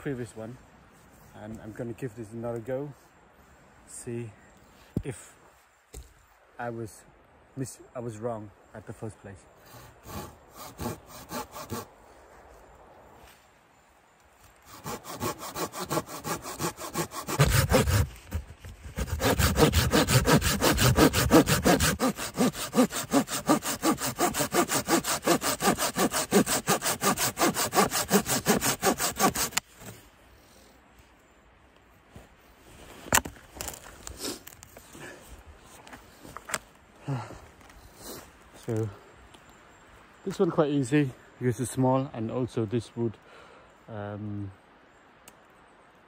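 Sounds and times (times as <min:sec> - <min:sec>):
hand saw sawing wood: 0:09.7 - 0:11.9, 0:14.6 - 0:29.9.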